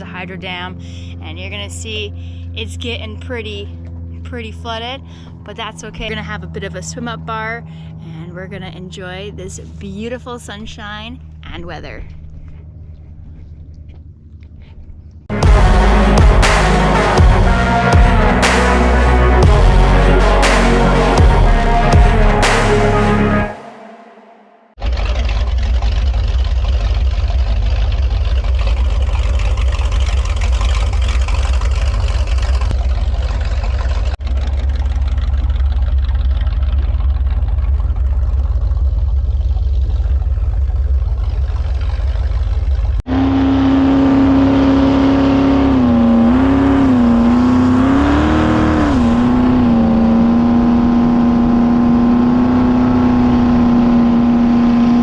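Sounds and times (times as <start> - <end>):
boat engine note: 15.3 - 55.0
boat rushing with deep rumble: 15.3 - 55.0.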